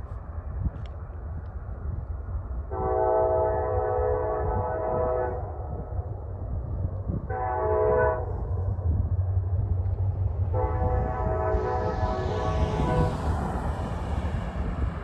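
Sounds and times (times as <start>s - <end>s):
low rumble of train: 0.0s - 15.0s
distant locomotive air horn: 2.7s - 5.5s, 7.3s - 8.5s, 10.5s - 13.7s.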